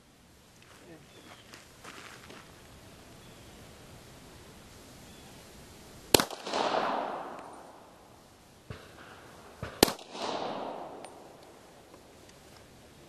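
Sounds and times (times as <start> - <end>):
pistol shots with echo: 6.1 - 7.9, 8.7 - 11.4.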